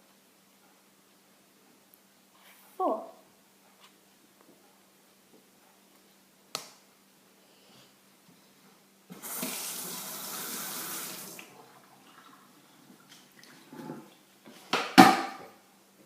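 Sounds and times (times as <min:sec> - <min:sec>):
water running: 0:09.1 - 0:14.3.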